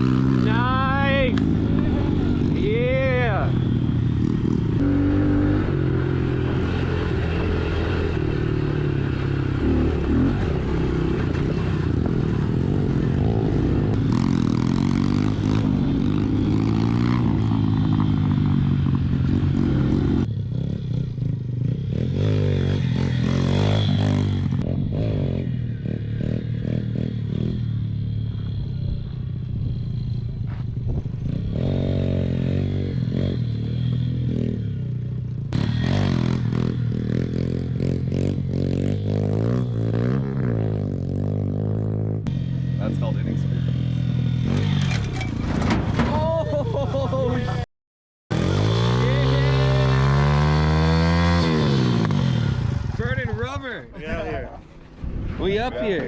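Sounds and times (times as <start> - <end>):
motorbike engine revving: 0.0 - 47.6, 48.3 - 53.5
clattering and scraping: 44.6 - 46.3.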